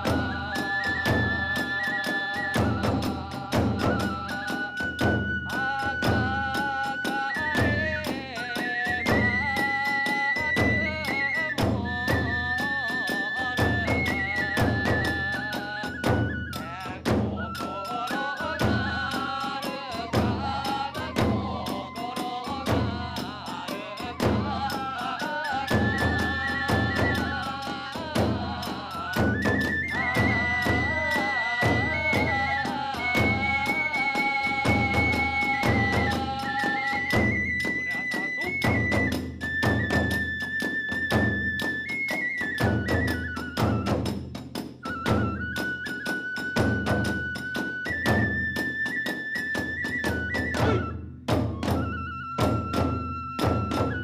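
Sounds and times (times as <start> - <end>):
bamboo flute melody: 0.0 - 54.0
drum strokes: 0.0 - 54.0.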